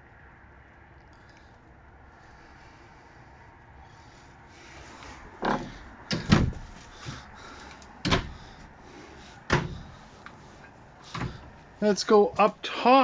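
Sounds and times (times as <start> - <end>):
dull knocks and thumps: 5.4 - 7.2, 8.0 - 8.7, 9.5 - 10.0, 11.1 - 11.6.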